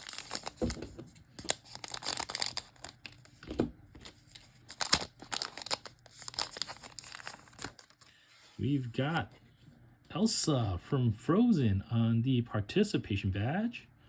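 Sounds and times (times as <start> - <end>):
wrapper tearing and crinkling: 0.0 - 0.8, 1.4 - 3.4, 4.0 - 8.1.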